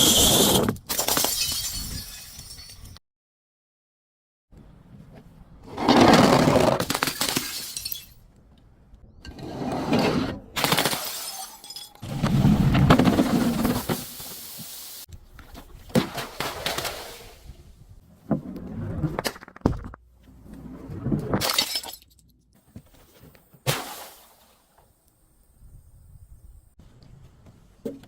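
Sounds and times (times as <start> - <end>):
glass bottles shattering: 0.9 - 3.0, 6.9 - 8.2, 10.7 - 12.1, 21.4 - 22.2.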